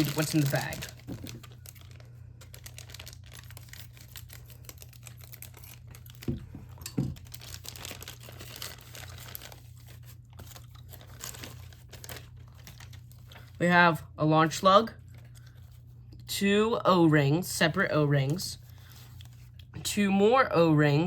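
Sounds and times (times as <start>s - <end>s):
plastic bag crinkling: 0.0s - 13.6s, 18.6s - 19.7s.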